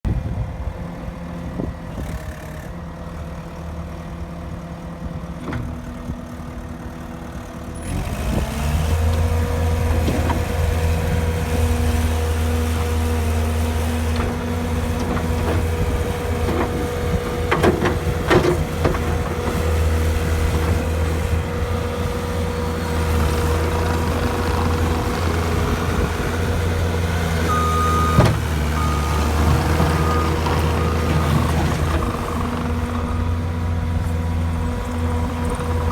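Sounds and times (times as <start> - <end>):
diesel engine idling and revving: 0.1 - 35.9
backup alarm beeping: 27.5 - 31.4.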